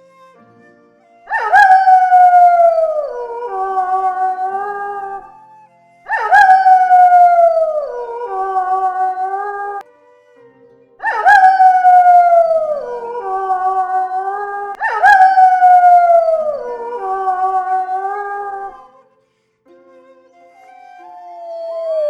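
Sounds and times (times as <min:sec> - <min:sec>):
wolves howling: 0:01.3 - 0:05.3, 0:06.1 - 0:09.8, 0:11.0 - 0:18.8, 0:21.4 - 0:22.0.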